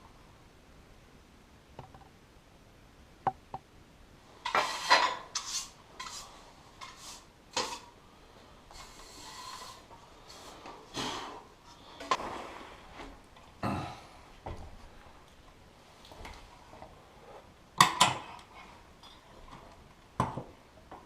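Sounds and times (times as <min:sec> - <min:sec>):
rough scraping and rubbing: 0:04.4 - 0:07.9, 0:08.7 - 0:10.6.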